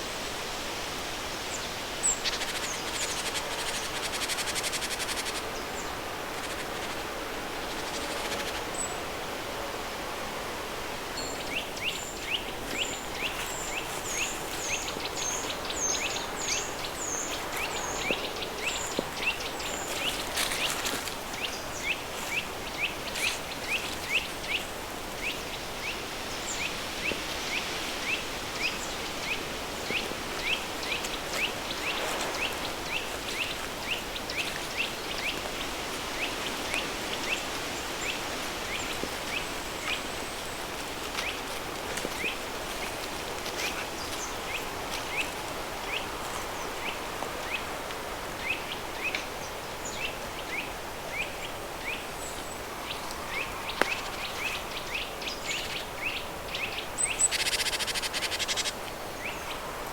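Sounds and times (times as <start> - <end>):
bird chirping: 53.3 - 59.4.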